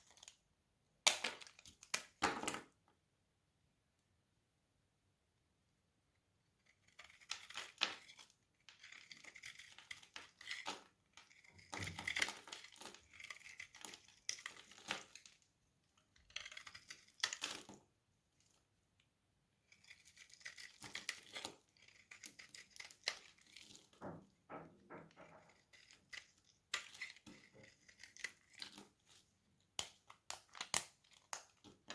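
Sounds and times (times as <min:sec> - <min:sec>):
knife cutting through soap: 0:06.6 - 0:15.4, 0:16.2 - 0:17.7, 0:19.7 - 0:24.0, 0:25.0 - 0:29.2.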